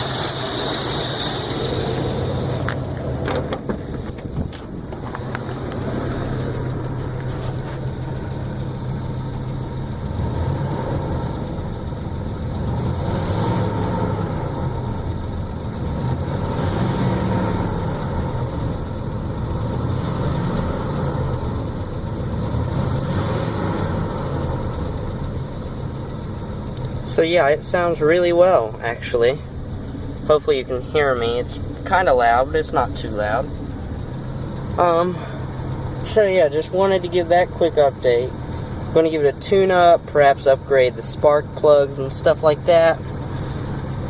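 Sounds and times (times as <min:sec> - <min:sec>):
car engine idling: 0:00.0 - 0:44.0
person talking: 0:26.9 - 0:29.5, 0:30.2 - 0:33.5, 0:34.7 - 0:35.4, 0:36.0 - 0:38.3, 0:38.9 - 0:43.0.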